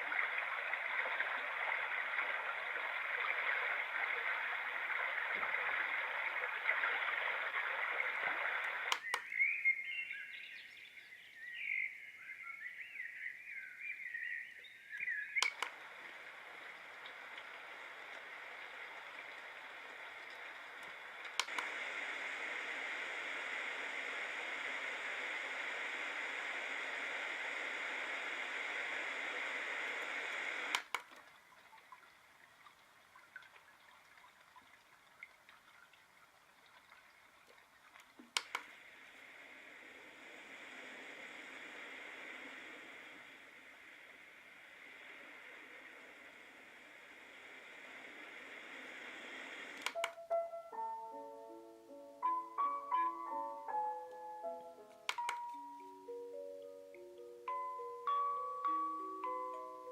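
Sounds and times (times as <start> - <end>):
white noise machine hiss: 0.0 - 59.9
button clicks: 8.9 - 9.3, 49.8 - 50.2, 55.0 - 55.6
water trickle with drips: 31.1 - 38.2.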